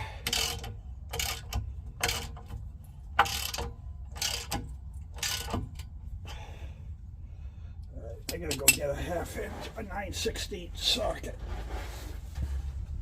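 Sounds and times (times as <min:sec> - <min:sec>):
ratchet wrench clicking: 0:00.2 - 0:05.9.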